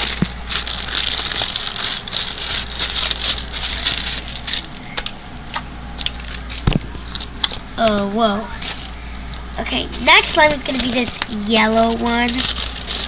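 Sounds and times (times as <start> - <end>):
wet slime crackling and popping: 9.6 - 13.0.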